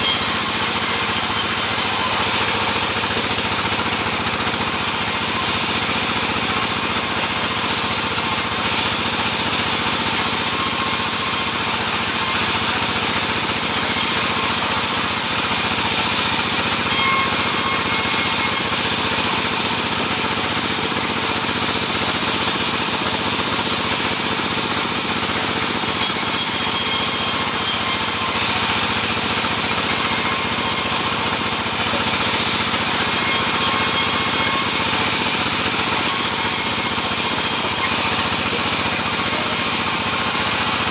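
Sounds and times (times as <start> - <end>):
sawmill saw cutting wood: 0.0 - 40.9.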